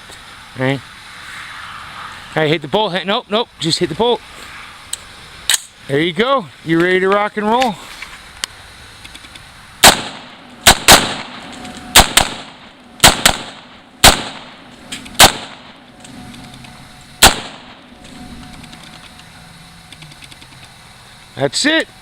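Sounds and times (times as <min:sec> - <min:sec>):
rifle shots with echo: 0:09.8 - 0:15.8, 0:17.2 - 0:17.8.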